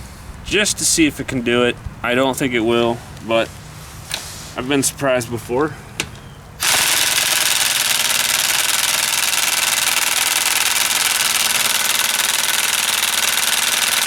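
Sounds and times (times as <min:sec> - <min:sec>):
impact wrench hammering: 0:06.0 - 0:14.0.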